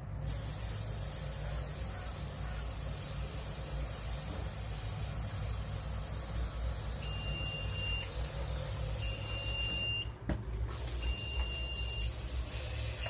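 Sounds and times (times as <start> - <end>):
steady hiss: 0.2 - 9.0
gas alarm beeping: 3.0 - 13.0.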